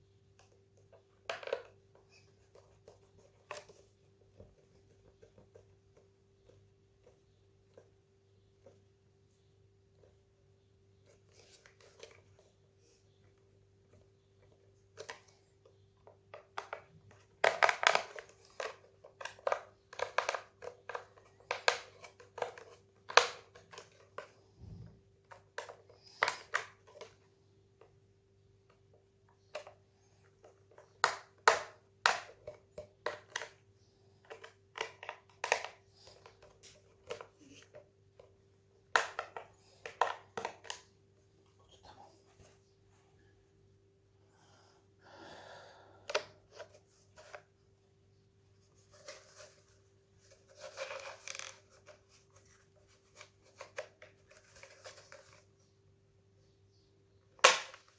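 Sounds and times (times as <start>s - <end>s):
plastic parts clicking and rattling: 13.9s - 24.4s, 28.7s - 40.9s, 48.9s - 55.5s.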